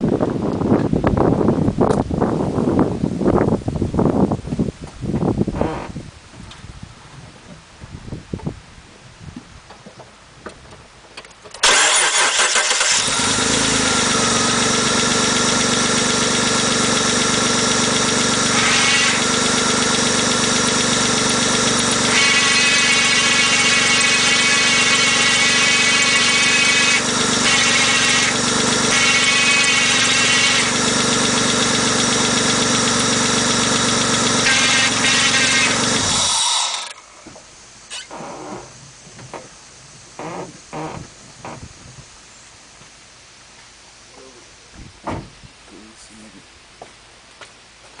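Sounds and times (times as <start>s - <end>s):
car engine starting and running: 11.3s - 39.4s
transmission noise: 36.8s - 42.1s.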